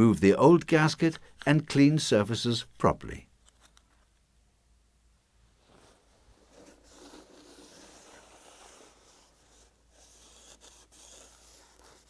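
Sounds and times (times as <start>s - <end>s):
faint scraping and rubbing: 5.5s - 12.0s.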